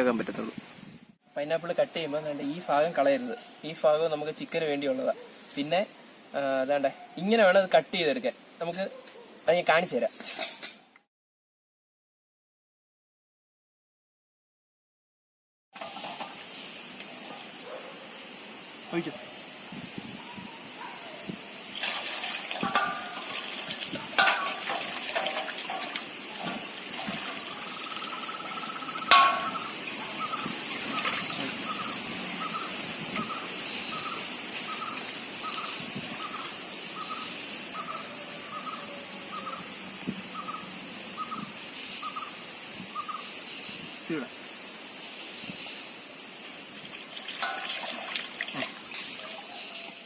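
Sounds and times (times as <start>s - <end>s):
water pouring and splashing: 21.4s - 37.0s, 45.6s - 50.0s
knocks and clatters: 24.2s - 27.4s.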